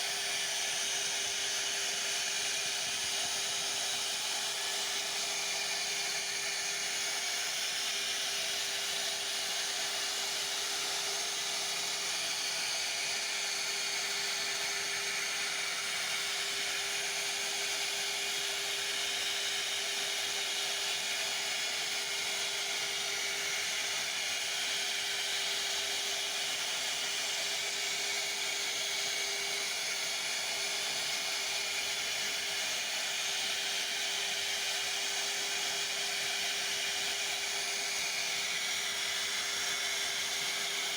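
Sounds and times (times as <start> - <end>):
router spindle routing wood: 22.4 - 40.9.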